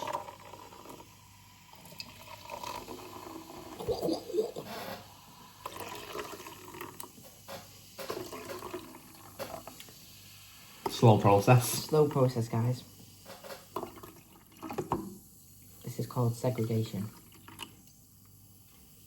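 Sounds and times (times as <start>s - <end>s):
liquid pouring into a glass: 0.0s - 7.2s, 7.9s - 9.9s, 13.6s - 16.0s, 16.6s - 18.0s.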